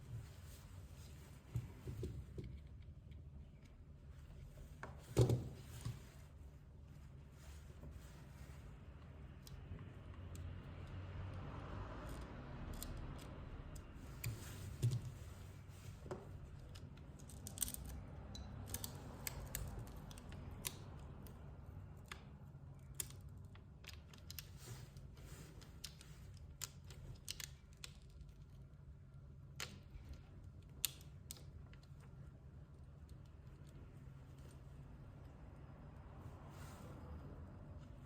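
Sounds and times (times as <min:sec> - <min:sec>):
low steady hum: 0:00.0 - 0:38.0
small tools clicking and tapping: 0:09.3 - 0:15.2, 0:16.2 - 0:21.4.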